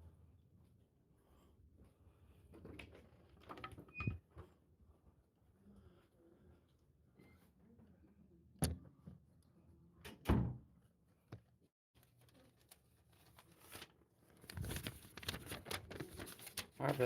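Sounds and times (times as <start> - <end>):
close rustling and clicking: 12.0 - 17.0.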